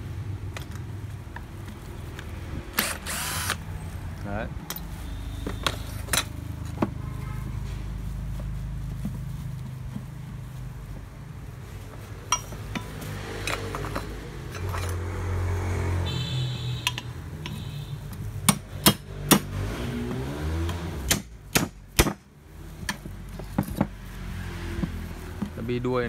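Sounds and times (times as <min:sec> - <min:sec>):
metal tools clinking on housing: 0:04.6 - 0:05.0, 0:12.3 - 0:15.0.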